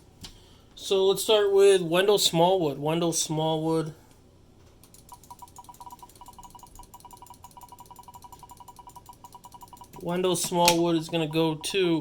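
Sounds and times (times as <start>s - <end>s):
spinning wheel ticking rapidly: 5.0s - 10.4s, 11.0s - 12.0s.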